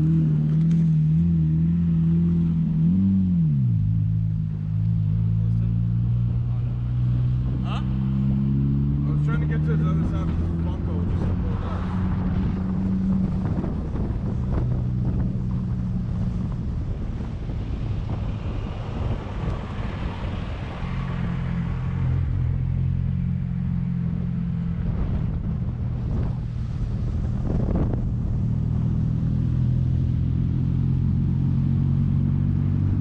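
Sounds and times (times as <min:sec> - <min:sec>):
wind noise on microphone: 0:10.1 - 0:22.6, 0:23.8 - 0:30.2.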